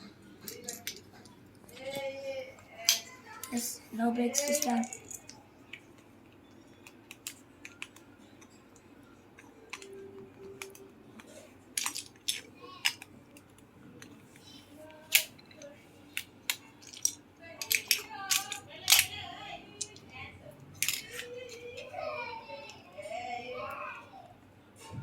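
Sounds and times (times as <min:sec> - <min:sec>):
plastic bricks clicking and clattering: 0:00.4 - 0:05.8, 0:06.7 - 0:08.6, 0:09.7 - 0:09.9, 0:10.5 - 0:14.2, 0:15.0 - 0:20.0, 0:20.8 - 0:21.8.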